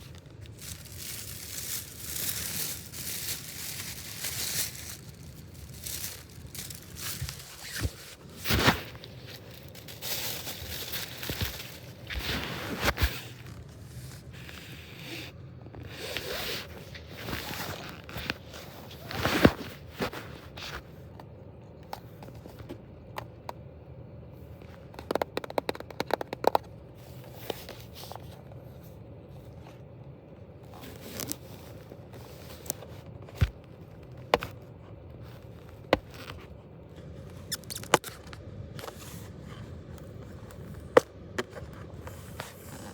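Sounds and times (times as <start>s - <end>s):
packaging rustling and tearing: 0.0s - 14.4s, 37.4s - 38.3s.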